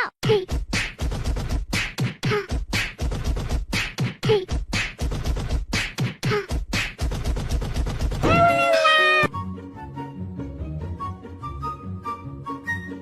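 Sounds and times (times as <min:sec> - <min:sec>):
beatboxing drum hits: 0:00.2 - 0:08.6.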